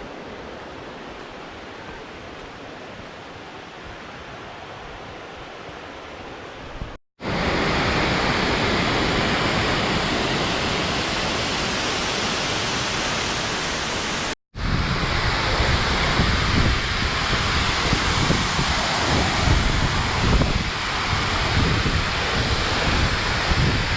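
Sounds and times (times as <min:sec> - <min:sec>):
waterfall rushing: 0:07.2 - 0:23.9.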